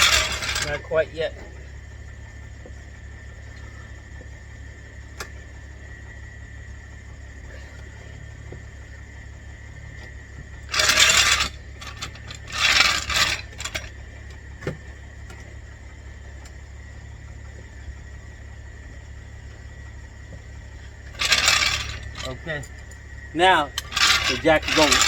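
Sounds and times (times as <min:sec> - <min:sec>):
car jack metal scraping: 0:00.0 - 0:01.8, 0:09.8 - 0:15.6, 0:20.6 - 0:25.0.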